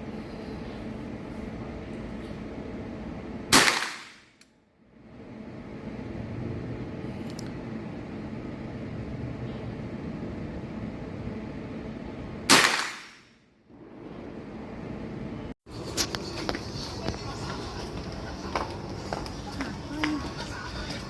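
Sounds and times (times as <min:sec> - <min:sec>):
steady background noise: 0:00.0 - 0:21.0
rifle shots: 0:03.5 - 0:04.3, 0:12.5 - 0:13.3.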